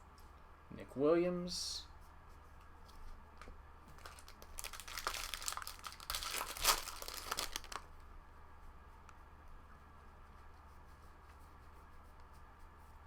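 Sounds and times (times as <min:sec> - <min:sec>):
foil wrapper crinkling: 0:03.9 - 0:07.9.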